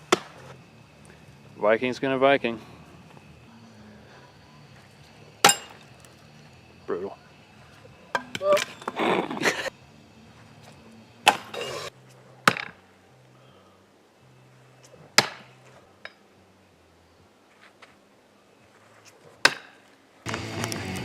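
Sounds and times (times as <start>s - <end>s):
axes striking wooden target: 0.0s - 0.4s, 5.4s - 5.8s, 11.2s - 11.6s, 12.4s - 12.8s, 15.2s - 15.5s.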